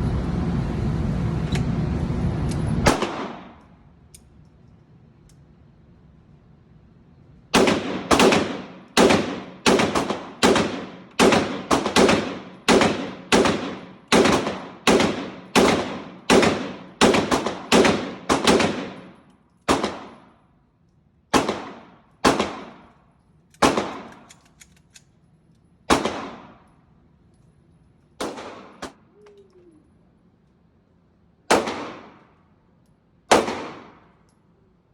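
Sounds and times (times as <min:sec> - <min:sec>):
gunshots with echoing tail: 0:02.9 - 0:03.6, 0:07.6 - 0:20.3, 0:21.3 - 0:22.9, 0:25.9 - 0:26.6, 0:28.2 - 0:29.0, 0:31.5 - 0:32.3, 0:33.3 - 0:34.1.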